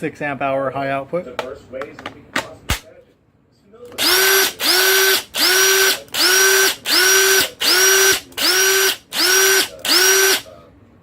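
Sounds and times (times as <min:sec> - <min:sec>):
cordless drill motor whine: 0:04.0 - 0:10.5.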